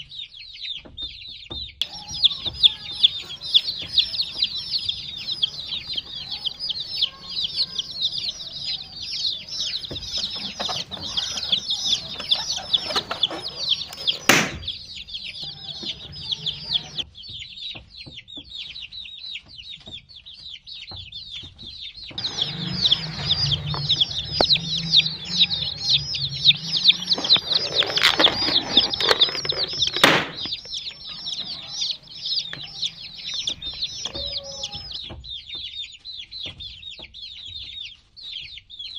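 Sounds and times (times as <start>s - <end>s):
baby chicks peeping: 0.0s - 38.9s
rustling: 1.9s - 17.0s, 22.2s - 35.0s
sharp knocks: 12.8s - 14.8s, 28.0s - 30.8s
low hum: 22.2s - 34.2s.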